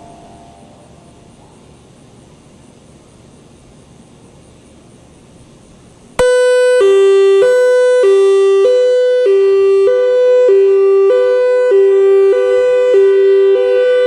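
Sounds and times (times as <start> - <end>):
two-tone electronic siren: 6.2 - 14.0.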